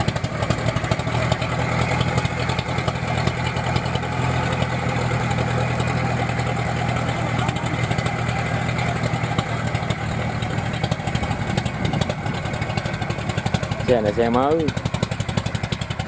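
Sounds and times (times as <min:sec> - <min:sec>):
tractor engine pulsing steadily: 0:00.0 - 0:16.0.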